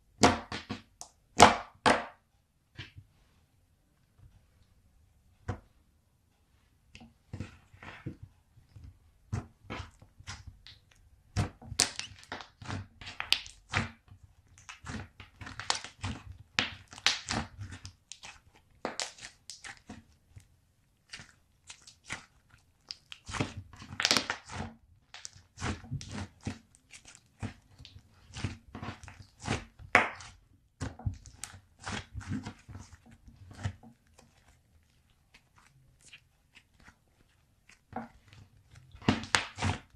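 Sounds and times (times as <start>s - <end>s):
slime squished by hand: 9.3s - 20.2s, 21.0s - 39.9s.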